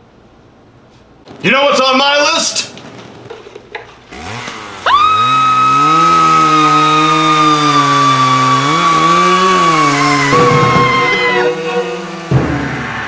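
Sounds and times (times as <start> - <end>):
chainsaw revving: 1.3 - 12.4
long high scream: 4.8 - 12.2.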